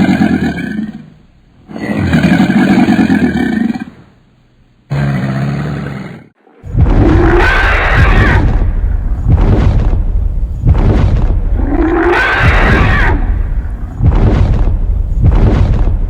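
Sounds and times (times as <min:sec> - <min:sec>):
animal growling: 0:04.9 - 0:08.6, 0:11.6 - 0:14.0
large animal roaring: 0:04.9 - 0:08.7, 0:11.6 - 0:13.9
rough rumbling growl: 0:05.1 - 0:16.0.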